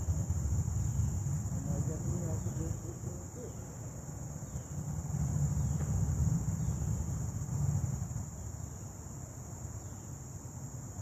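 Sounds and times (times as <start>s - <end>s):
insect chorus buzzing: 0.0s - 11.0s
low rumble: 4.7s - 8.4s.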